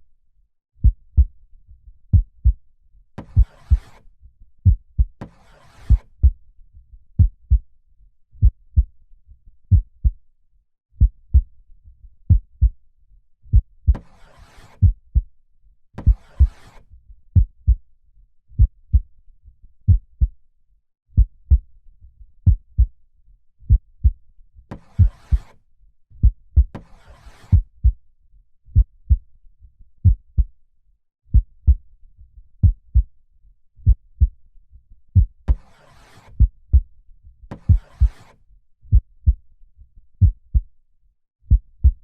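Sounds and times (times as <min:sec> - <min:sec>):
slow heartbeat: 0:00.8 - 0:01.3, 0:02.1 - 0:02.6, 0:03.3 - 0:03.9, 0:04.6 - 0:05.2, 0:07.2 - 0:07.6, 0:08.4 - 0:08.9, 0:09.7 - 0:10.2, 0:11.0 - 0:11.5, 0:12.3 - 0:12.8, 0:13.5 - 0:14.0, 0:14.8 - 0:15.3, 0:16.0 - 0:16.6, 0:17.4 - 0:17.8, 0:18.6 - 0:19.1, 0:19.9 - 0:20.3, 0:21.2 - 0:21.6, 0:22.4 - 0:22.9, 0:23.7 - 0:24.2, 0:25.0 - 0:25.5, 0:26.2 - 0:26.8, 0:28.8 - 0:29.2, 0:30.0 - 0:30.5, 0:31.3 - 0:31.8, 0:32.6 - 0:33.1, 0:33.8 - 0:34.4, 0:36.4 - 0:36.9, 0:37.6 - 0:38.2, 0:38.9 - 0:39.4, 0:40.2 - 0:40.7, 0:41.5 - 0:42.0.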